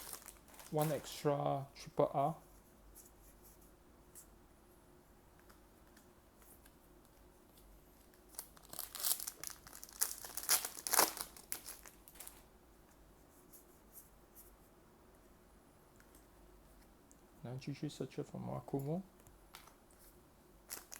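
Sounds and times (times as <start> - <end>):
foil wrapper tearing and crinkling: 0.0 - 1.1, 8.3 - 12.4, 20.7 - 20.9.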